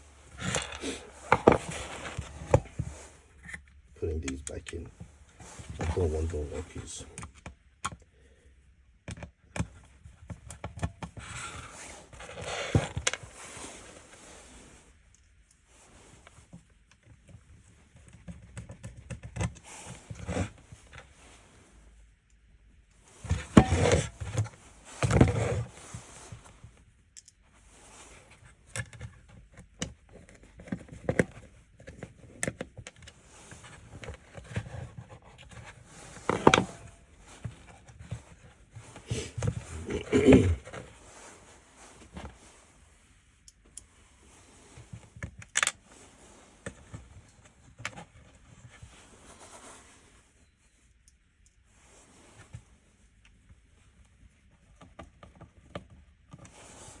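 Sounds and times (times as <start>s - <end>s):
plastic parts clicking and rattling: 45.3s - 45.8s.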